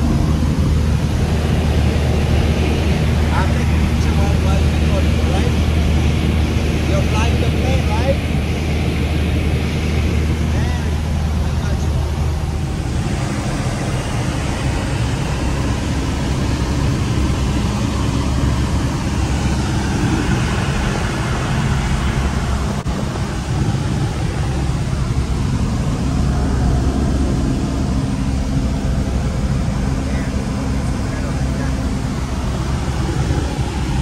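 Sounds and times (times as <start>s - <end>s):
aircraft engine drone in cockpit: 0.0s - 34.0s.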